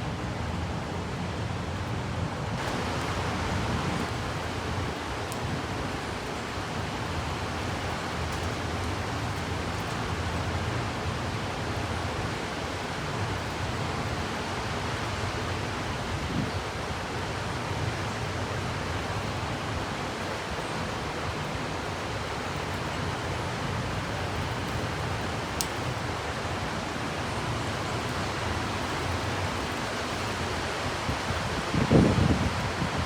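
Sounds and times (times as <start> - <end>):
wind and rain rushing: 0.0 - 33.0.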